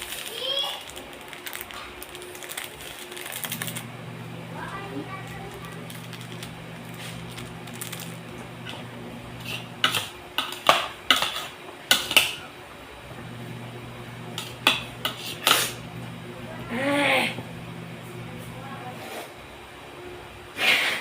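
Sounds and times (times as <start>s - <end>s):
steady low hum: 3.5s - 10.1s, 12.9s - 19.0s.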